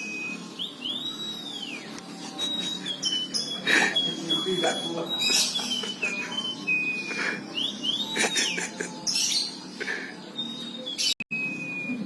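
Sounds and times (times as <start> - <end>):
canary singing: 0.0 - 12.0.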